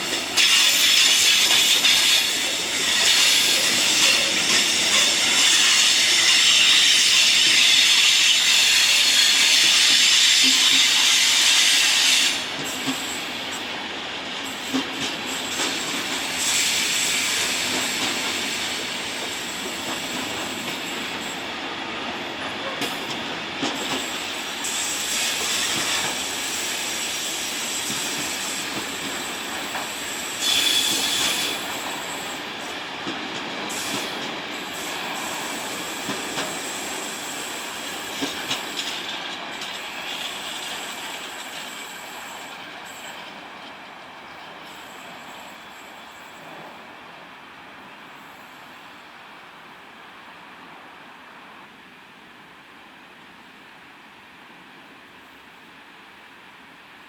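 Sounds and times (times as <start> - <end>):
train wheels squealing: 0.0 - 13.7, 14.4 - 21.6, 23.8 - 46.9, 48.0 - 49.1
train rolling on rails: 0.0 - 57.0.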